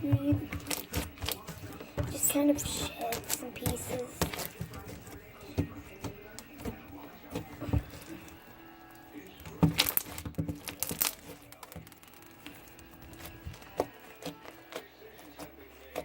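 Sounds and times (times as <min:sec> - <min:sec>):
slime crackling and clicking: 0:00.2 - 0:08.4.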